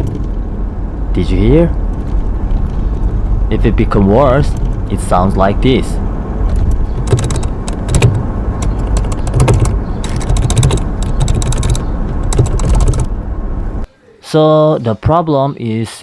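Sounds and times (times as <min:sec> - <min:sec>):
steady low rumble: 0:00.0 - 0:13.9
brake pedal clicking and knocking: 0:06.4 - 0:13.1.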